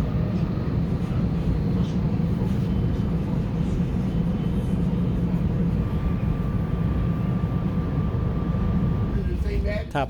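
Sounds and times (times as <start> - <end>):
electric train rumbling: 0.0 - 10.0.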